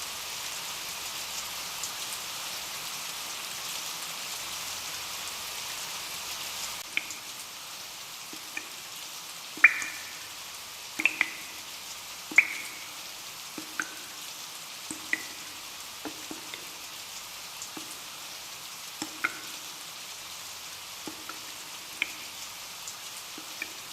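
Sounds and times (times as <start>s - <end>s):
rain hissing: 0.0s - 23.9s
drops plinking on hard surface: 9.6s - 10.3s, 11.0s - 11.6s, 12.3s - 12.9s.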